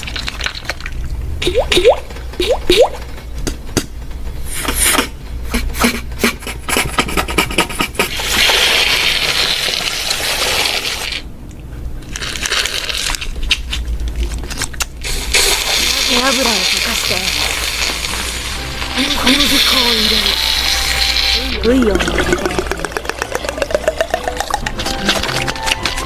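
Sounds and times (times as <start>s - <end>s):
mouth hissing: 4.5s - 11.2s, 15.0s - 23.1s.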